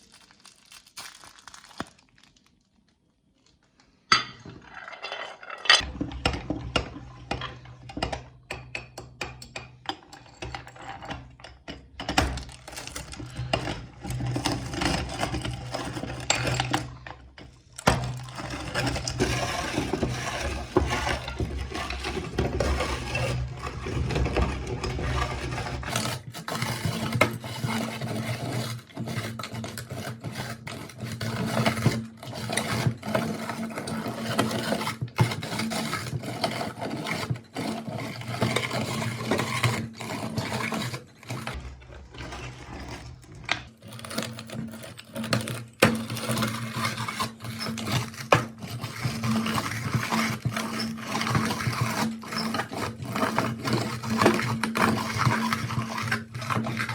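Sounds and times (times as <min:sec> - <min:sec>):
hard candy cracking and crunching: 0:00.0 - 0:04.0.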